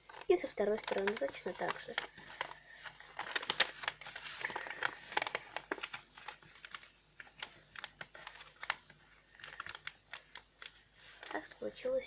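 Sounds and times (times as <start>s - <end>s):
paper being folded and creased: 0.0s - 12.0s.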